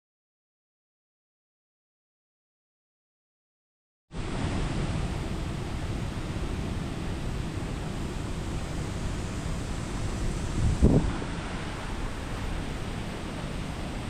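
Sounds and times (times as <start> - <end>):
waterfall roaring: 4.2 - 14.0.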